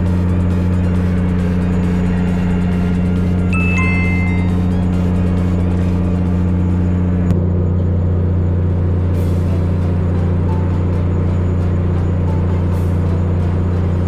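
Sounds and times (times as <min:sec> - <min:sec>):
engine humming: 0:00.0 - 0:14.0
high electronic beeps: 0:03.4 - 0:05.8.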